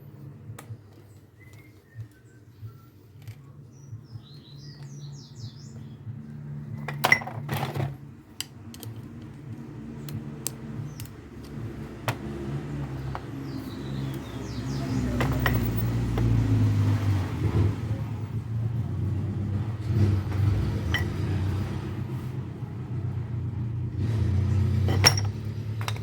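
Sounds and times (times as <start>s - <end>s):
bird chirping: 1.0s - 6.8s, 13.3s - 15.8s
metallic clicks and knocks: 24.8s - 26.0s.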